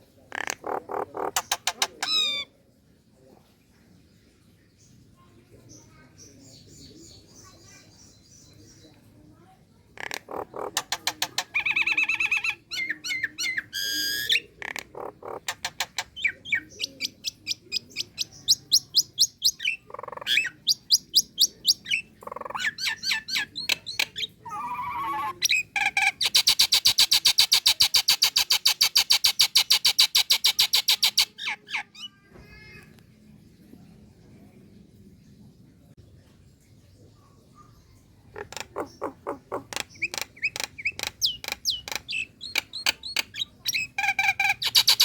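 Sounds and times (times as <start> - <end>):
myna bird calling: 0.3 - 2.5, 10.0 - 32.2, 38.3 - 45.0.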